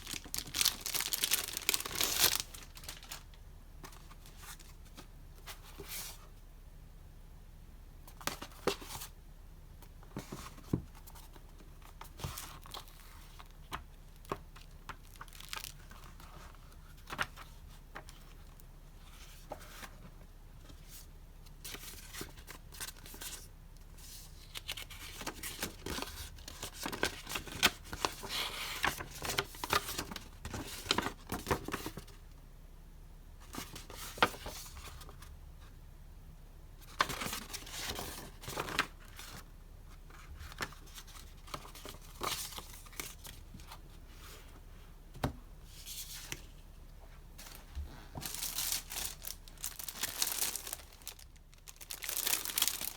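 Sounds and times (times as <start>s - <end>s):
packaging tearing and crinkling: 0.0s - 3.2s, 48.2s - 52.9s.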